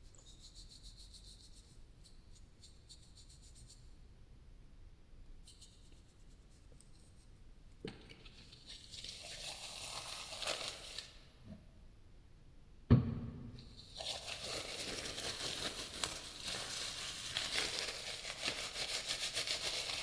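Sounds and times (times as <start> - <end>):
scratchy rustle: 14.0 - 20.0.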